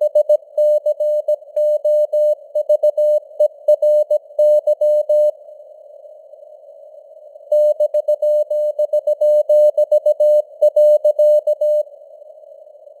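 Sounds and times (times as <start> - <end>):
morse code tone: 7.5 - 11.8.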